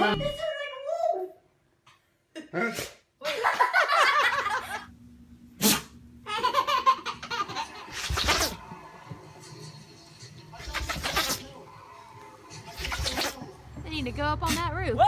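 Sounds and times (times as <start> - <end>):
people laughing: 3.2 - 4.9
pet sneezing: 5.6 - 6.0, 7.9 - 8.6, 10.6 - 11.6, 12.7 - 13.5.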